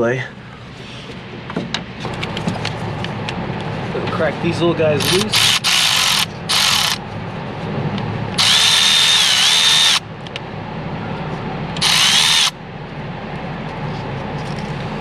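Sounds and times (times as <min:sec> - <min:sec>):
cordless power driver whine: 0:05.0 - 0:07.0, 0:08.3 - 0:10.0, 0:11.8 - 0:12.6.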